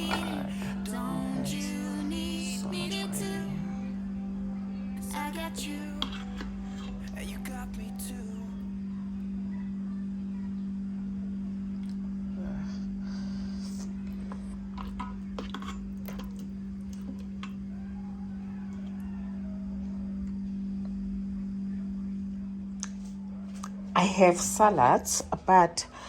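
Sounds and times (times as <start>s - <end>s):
low electrical hum: 0.0s - 26.0s.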